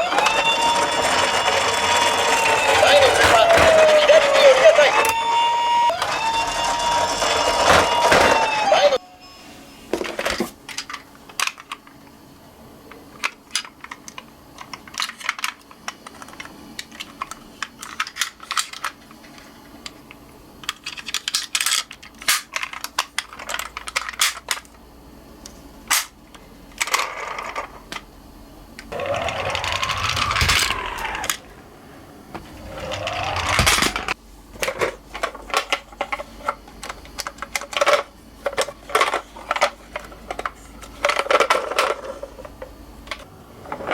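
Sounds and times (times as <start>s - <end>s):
toy cars clattering down a slope: 0.0s - 5.2s, 5.9s - 8.9s, 29.0s - 31.4s, 37.4s - 42.5s
toy electronic siren: 0.0s - 9.6s, 29.0s - 31.4s, 32.7s - 34.2s.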